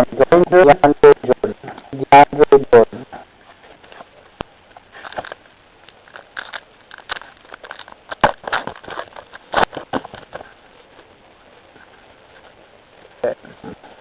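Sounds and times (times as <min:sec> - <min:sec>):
trading cards rustling and snapping: 0:05.0 - 0:10.5.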